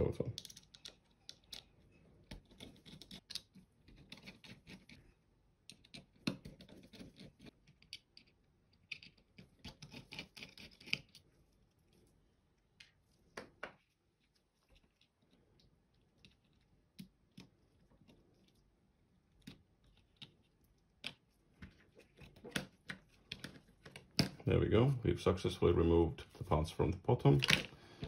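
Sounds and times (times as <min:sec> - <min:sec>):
plastic parts clicking: 0:00.3 - 0:05.0.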